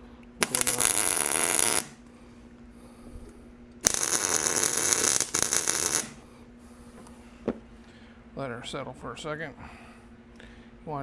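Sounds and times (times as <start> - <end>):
low steady hum: 0.0 - 11.0
arc welder crackling: 0.4 - 2.1, 3.2 - 6.3.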